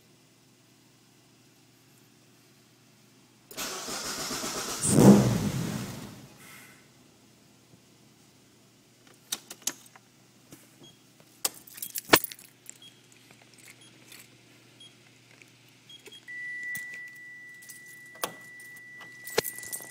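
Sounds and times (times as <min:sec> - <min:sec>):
car keys jangling: 0:11.5 - 0:14.4, 0:16.8 - 0:19.9.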